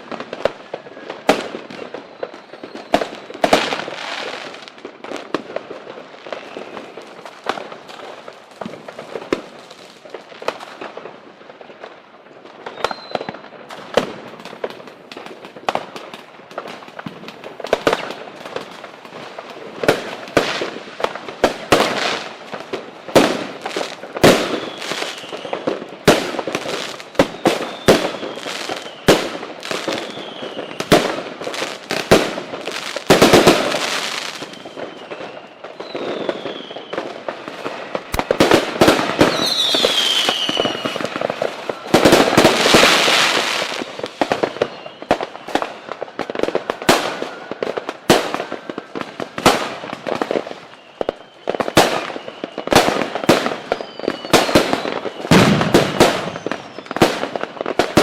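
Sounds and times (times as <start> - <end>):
whistling fireworks: 0.0 - 58.0
firecracker bangs: 52.7 - 58.0.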